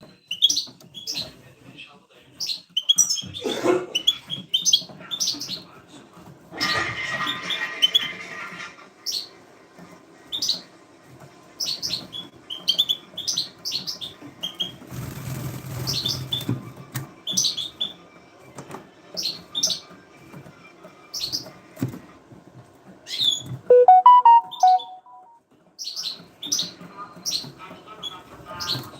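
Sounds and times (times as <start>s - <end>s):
birds chirping: 11.5s - 18.5s, 19.1s - 21.7s, 23.0s - 28.9s.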